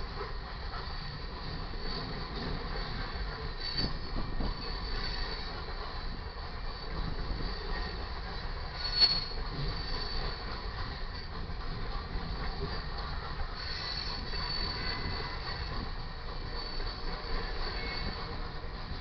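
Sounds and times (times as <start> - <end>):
train wheels rumbling: 0.0 - 19.0
loud screech with knock: 3.6 - 4.1, 8.8 - 10.2, 13.6 - 15.7
high wheel squeal: 8.7 - 10.4, 13.6 - 15.8, 16.5 - 18.3.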